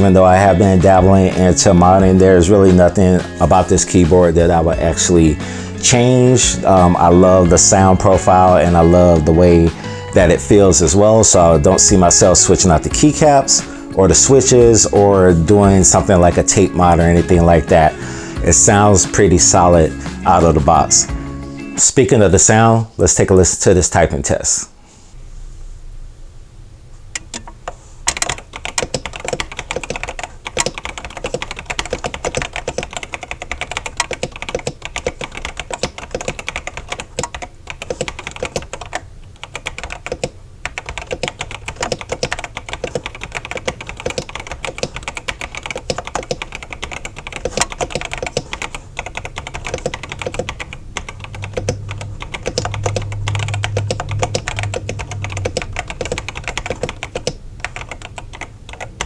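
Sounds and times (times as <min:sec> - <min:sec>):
mechanical keyboard typing: 0:28.1 - 0:59.0.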